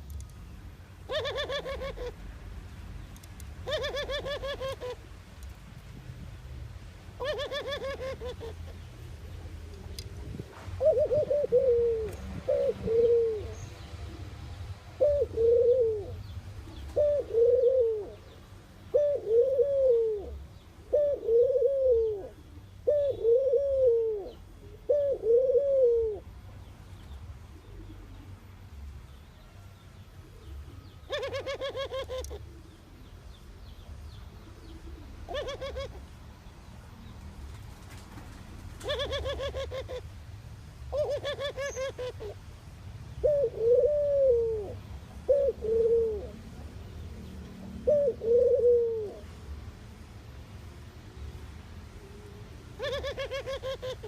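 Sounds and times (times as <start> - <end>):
dove cooing: 1.1 - 2.2, 3.6 - 5.1, 7.2 - 26.3, 27.5 - 28.5, 30.2 - 33.1, 34.4 - 36.1, 38.7 - 40.1, 40.9 - 42.4, 43.2 - 46.6, 47.7 - 49.4, 52.0 - 54.0.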